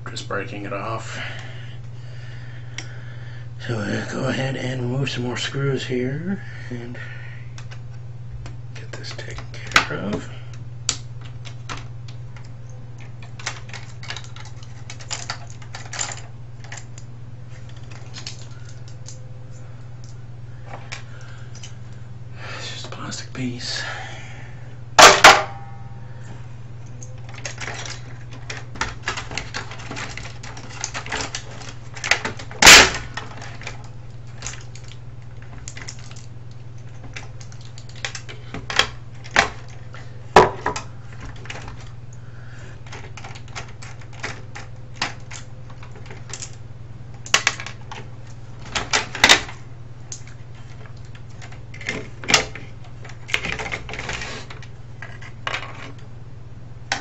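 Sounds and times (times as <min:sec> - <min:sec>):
low hum: 0:00.0 - 0:57.0
tools and parts clattering: 0:13.0 - 0:17.0, 0:25.0 - 0:25.8, 0:27.0 - 0:39.8, 0:47.2 - 0:56.0.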